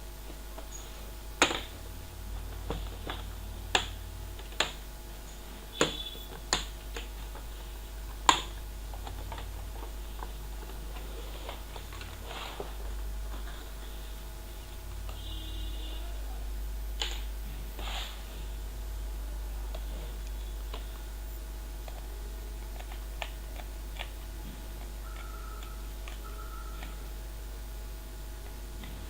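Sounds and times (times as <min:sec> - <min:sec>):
steady low hum: 0:00.0 - 0:29.0.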